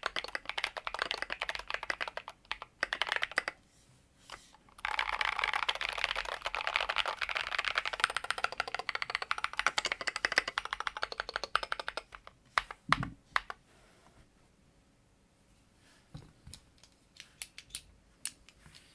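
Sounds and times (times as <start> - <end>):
mechanical keyboard typing: 0.0 - 3.6, 4.8 - 12.8.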